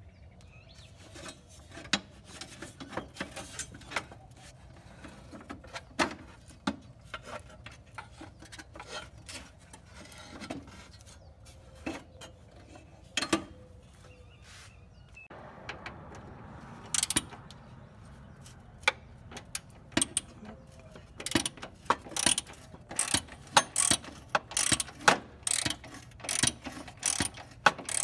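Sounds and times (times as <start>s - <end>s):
hand tools clicking and tapping: 15.7s - 17.7s, 18.4s - 28.0s
metal parts being handled: 16.9s - 17.5s, 19.3s - 28.0s.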